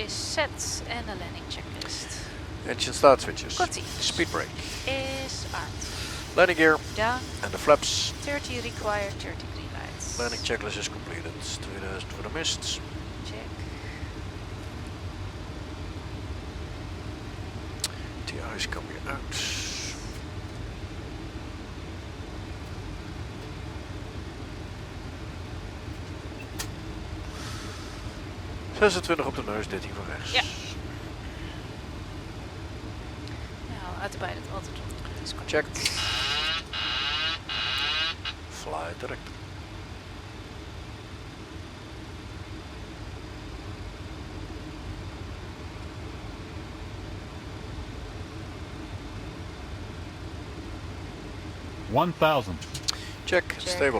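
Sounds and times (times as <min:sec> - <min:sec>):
aircraft engine hum: 0:00.0 - 0:53.9
airflow: 0:02.0 - 0:10.6, 0:19.3 - 0:20.2, 0:26.4 - 0:28.4
rushing airflow: 0:03.6 - 0:09.1
click: 0:26.0 - 0:26.8.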